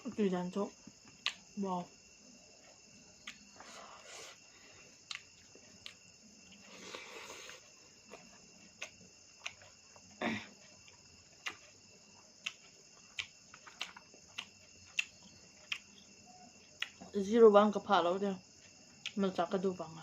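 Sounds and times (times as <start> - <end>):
crickets trilling: 0.0 - 20.0
person chewing and eating: 2.4 - 16.1.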